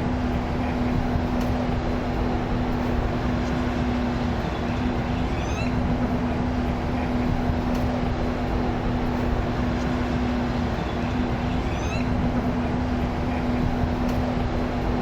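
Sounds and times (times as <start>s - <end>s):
machinery hum: 0.0s - 15.0s
faint high chirp: 4.6s - 5.8s, 10.8s - 12.1s.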